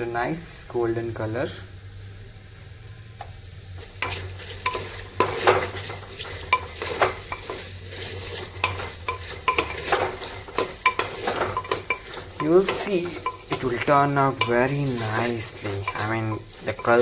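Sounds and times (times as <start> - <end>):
vegetables sizzling: 0.0 - 17.0
spoon scraping a clay pot: 3.8 - 17.0.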